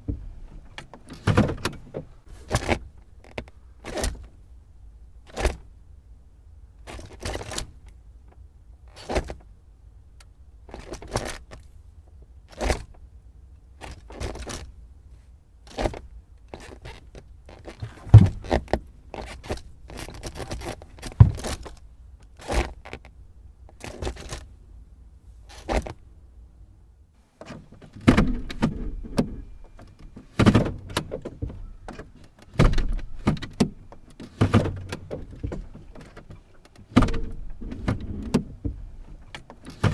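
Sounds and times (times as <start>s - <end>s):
gear lever clicking and clunking: 0.0s - 4.3s, 15.7s - 23.1s, 23.7s - 24.5s, 25.5s - 26.0s, 27.4s - 39.9s.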